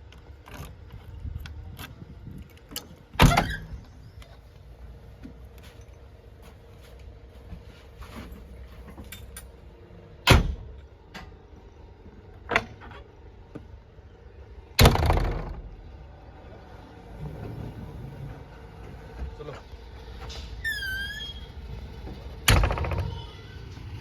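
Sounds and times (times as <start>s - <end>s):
diesel engine running with whine: 13.8s - 24.0s.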